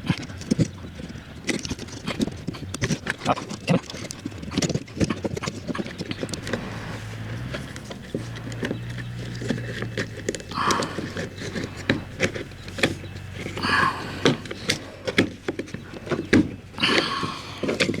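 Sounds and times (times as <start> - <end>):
metal rails clicking and rattling: 0.0 - 18.0.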